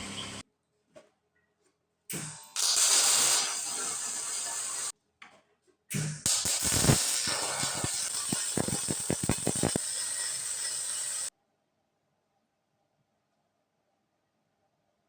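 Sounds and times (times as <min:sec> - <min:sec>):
welding arc sizzling and crackling: 0:02.1 - 0:04.9, 0:06.2 - 0:11.3.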